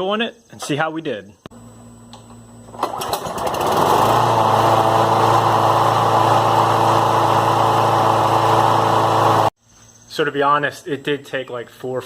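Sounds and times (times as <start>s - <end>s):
lawn mower engine running: 1.6s - 9.5s.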